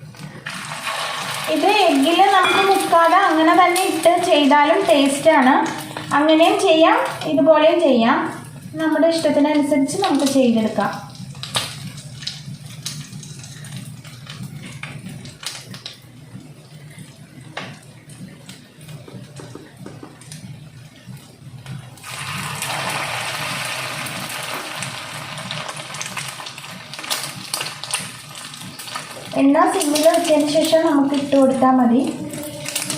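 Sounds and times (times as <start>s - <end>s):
cutlets frying in hot oil: 0.0s - 20.0s, 20.8s - 32.0s.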